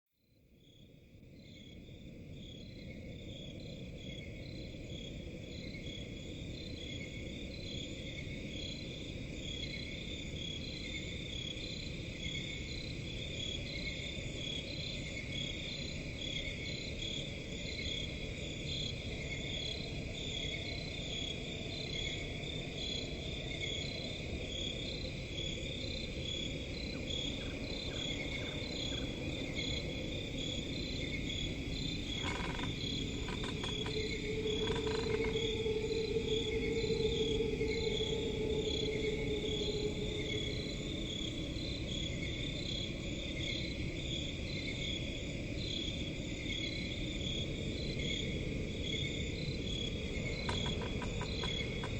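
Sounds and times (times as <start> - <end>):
crickets trilling: 0.6 - 51.9.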